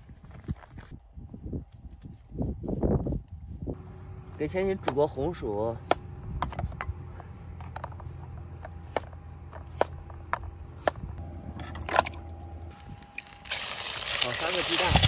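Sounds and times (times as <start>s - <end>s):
low steady rumble: 3.0s - 14.2s.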